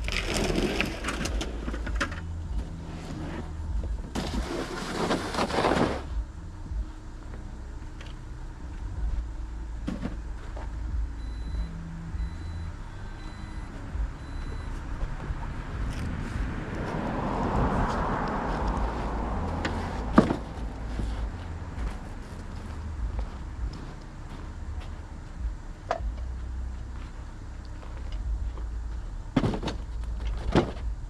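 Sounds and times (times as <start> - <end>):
vehicle engine and road rumble: 0.0 - 31.0
loud rushing noise: 13.8 - 22.2.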